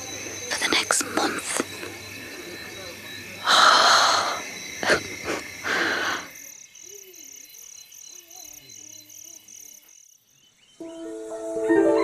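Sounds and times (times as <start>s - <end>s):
cricket chirping: 0.0s - 12.0s
faint wavering insect calls: 0.0s - 12.0s
music: 10.8s - 12.0s.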